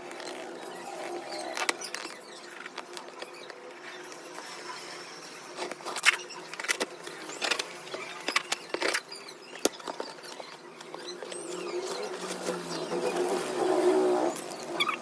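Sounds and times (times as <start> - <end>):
packaging crinkling and rustling: 0.0 - 4.2.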